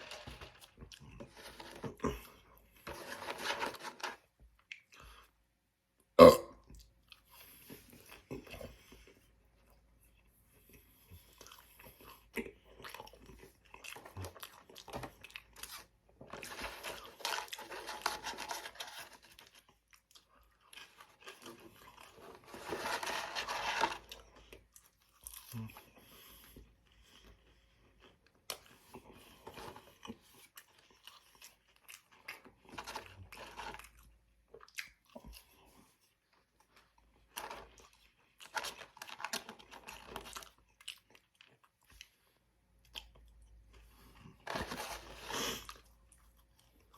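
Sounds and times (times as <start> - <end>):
man chewing and crunching food: 0.0 - 46.9.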